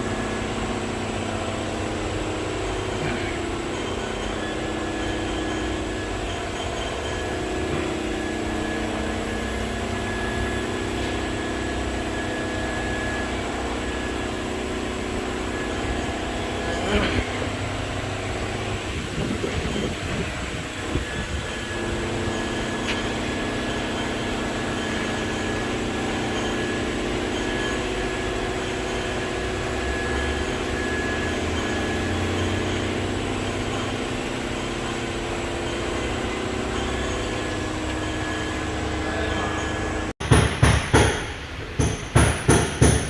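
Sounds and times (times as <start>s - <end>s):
mechanical drone with hiss: 0.0s - 43.0s.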